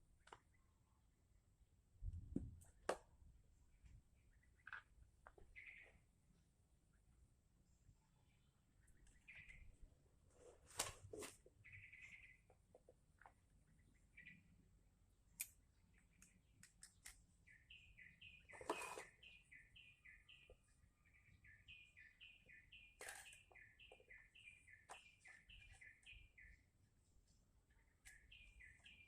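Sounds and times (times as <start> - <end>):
bird chirping: 3.6 - 10.0, 11.4 - 29.0.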